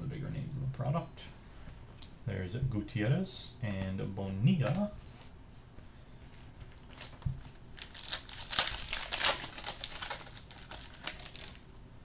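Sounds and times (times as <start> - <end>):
foil wrapper crinkling: 6.4 - 11.8.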